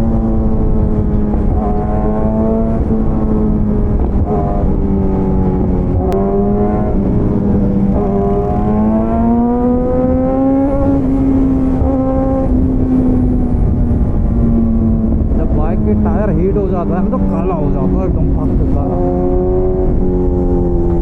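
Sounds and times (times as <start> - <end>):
motorcycle engine cruising: 0.0 - 21.0
road and wind rumble: 0.0 - 21.0.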